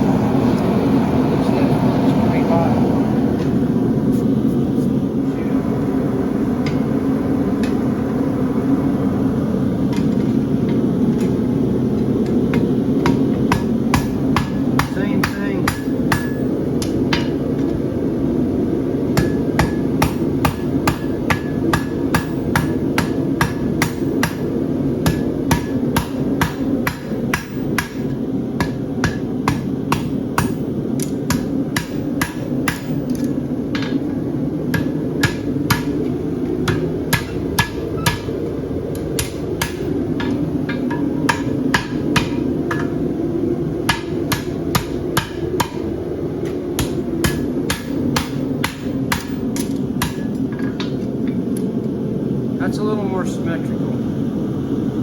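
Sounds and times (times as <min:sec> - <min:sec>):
low rumble: 0:00.0 - 0:41.1
hammer striking horseshoe on anvil: 0:12.5 - 0:17.4, 0:19.2 - 0:34.1, 0:34.7 - 0:43.0, 0:43.9 - 0:51.0.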